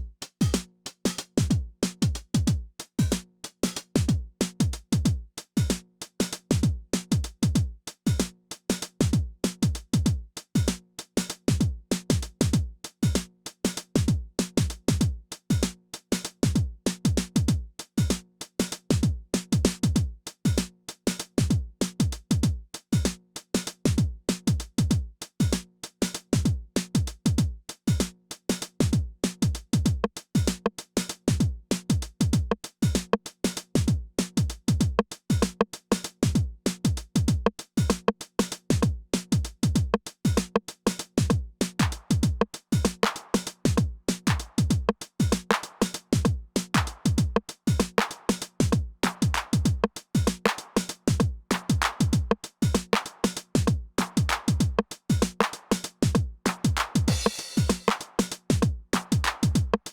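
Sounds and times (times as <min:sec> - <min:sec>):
drum machine hi-hat and snare: 0:00.0 - 0:59.9
drum machine kicks: 0:28.9 - 0:30.6, 0:31.4 - 0:33.1, 0:36.2 - 0:38.1, 0:38.7 - 0:40.6, 0:41.2 - 0:59.9.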